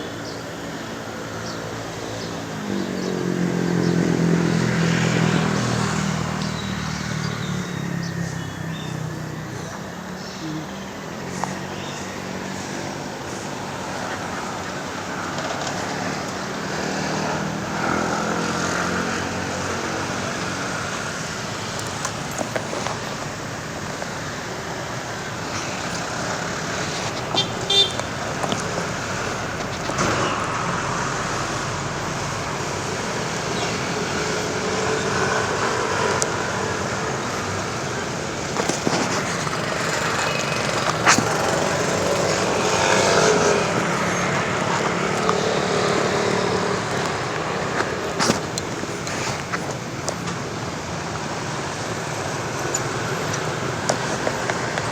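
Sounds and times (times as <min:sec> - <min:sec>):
road traffic noise: 0:00.0 - 0:54.9
stuttering car horn toot: 0:27.1 - 0:30.7.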